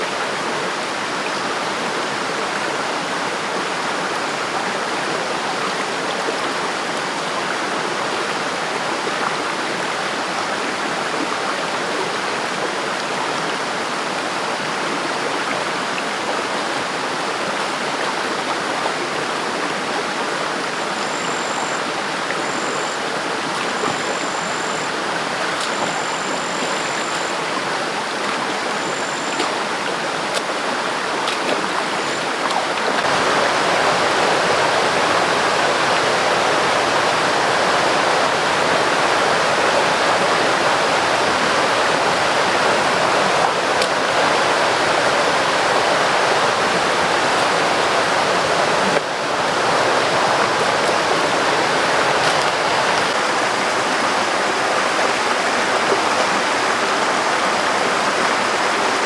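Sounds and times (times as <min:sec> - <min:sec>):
river water flowing: 0:00.0 - 0:59.0
thin high steady tone: 0:20.9 - 0:25.1.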